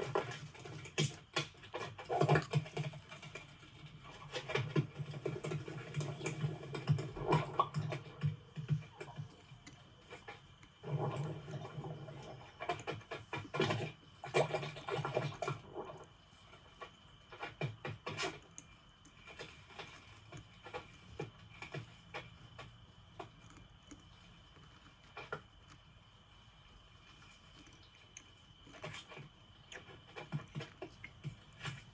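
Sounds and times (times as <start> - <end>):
scratchy insect clicks and rustles: 11.6 - 31.9.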